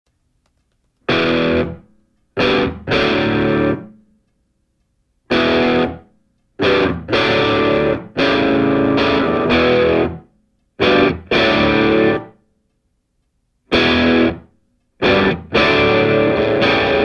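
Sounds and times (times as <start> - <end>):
distorted electric guitar chords: 1.1 - 4.0, 5.3 - 12.4, 13.7 - 17.0.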